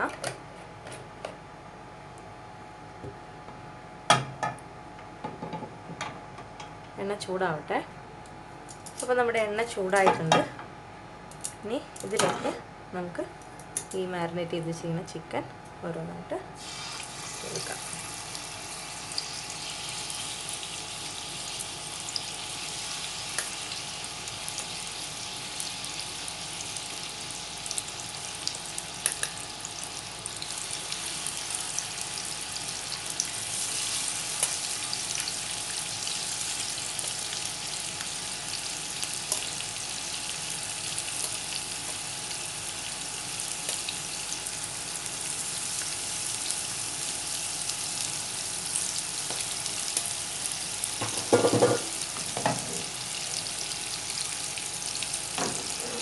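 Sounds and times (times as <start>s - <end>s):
chicken sizzling in a pan: 16.6s - 56.0s.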